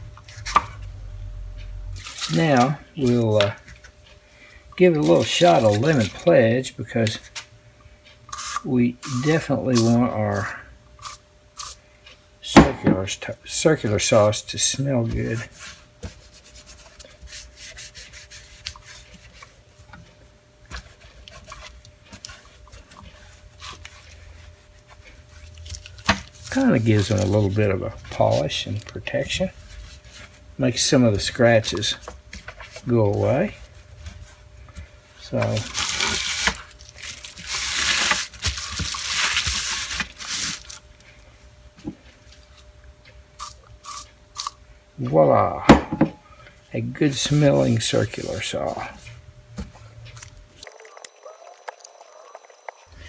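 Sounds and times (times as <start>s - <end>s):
faint steady hum: 0.0s - 53.0s
rag rubbing scratchily: 47.1s - 49.1s.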